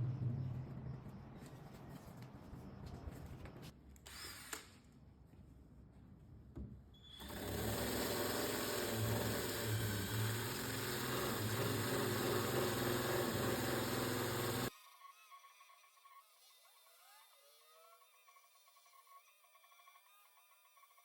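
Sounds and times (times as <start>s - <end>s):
electric drill sanding: 7.2s - 14.7s.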